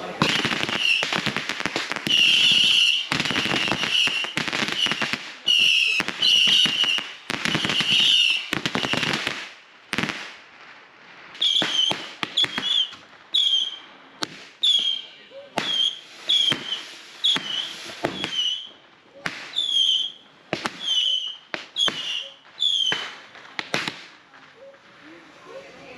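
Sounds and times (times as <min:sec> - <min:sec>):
fireworks crackling and whining: 0:00.0 - 0:25.9.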